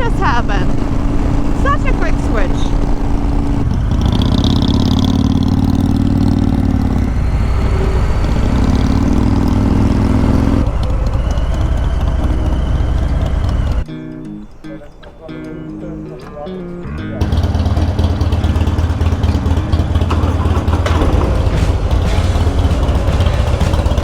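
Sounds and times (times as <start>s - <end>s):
wind rush on microphone: 0.0s - 5.9s
motorcycle engine pulling hard: 0.0s - 13.9s, 17.2s - 24.0s.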